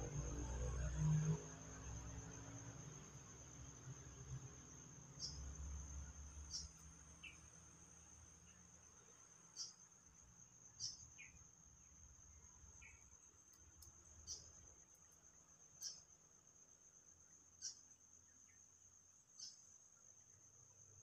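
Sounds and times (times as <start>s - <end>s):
crickets trilling: 0.0s - 21.0s
short cricket chirps: 0.0s - 21.0s.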